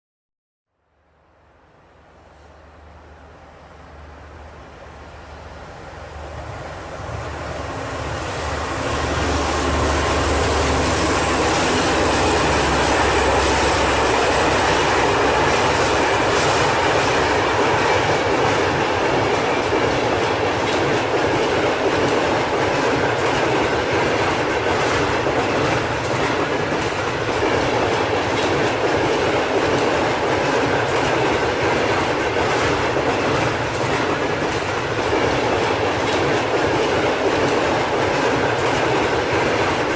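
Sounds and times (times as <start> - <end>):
high whine of train: 0.8 - 39.9
train running on rails: 1.2 - 39.9
clicks of wheels on track: 14.8 - 39.9.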